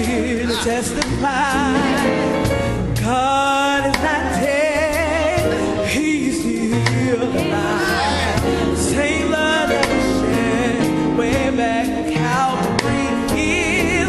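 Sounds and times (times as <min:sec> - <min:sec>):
band playing drums and bass: 0:00.0 - 0:14.0
gospel choir singing: 0:00.0 - 0:14.0.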